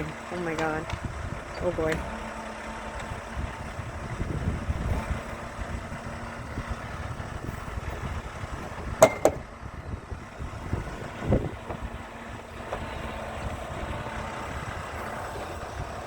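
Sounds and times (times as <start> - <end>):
forklift engine rumbling: 0.0 - 16.0
sharp metallic clanks: 9.0 - 9.4.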